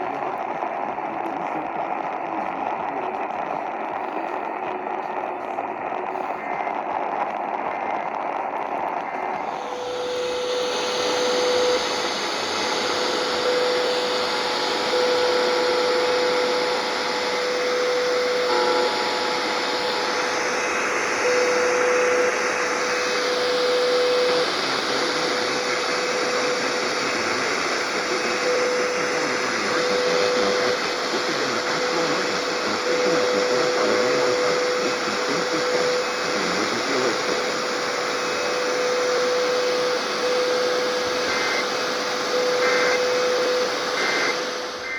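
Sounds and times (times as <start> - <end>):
radio static hiss: 0.0 - 44.9
whistling tone: 44.0 - 44.9.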